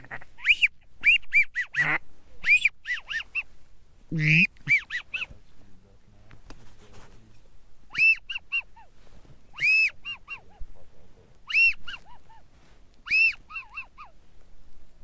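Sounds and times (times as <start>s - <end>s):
goose honking: 0.0s - 3.5s, 4.1s - 5.4s, 7.9s - 8.9s, 9.5s - 10.7s, 11.5s - 14.2s.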